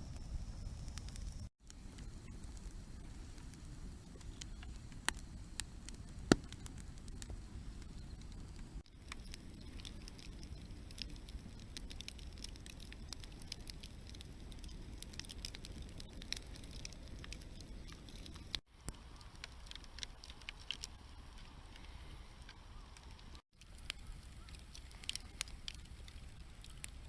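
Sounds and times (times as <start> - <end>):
steady low rumble: 0.0 - 9.8
wood fire crackling and popping: 0.1 - 27.0.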